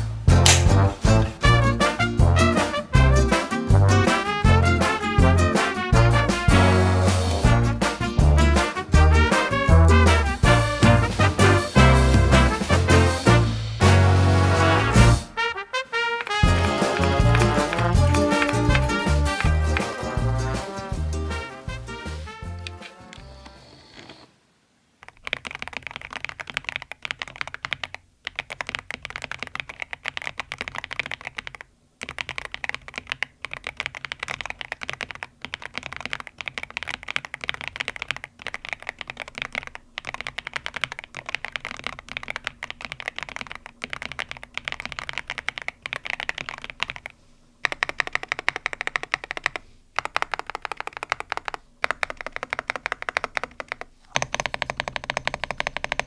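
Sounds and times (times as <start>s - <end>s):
mechanical keyboard typing: 25.0s - 56.0s.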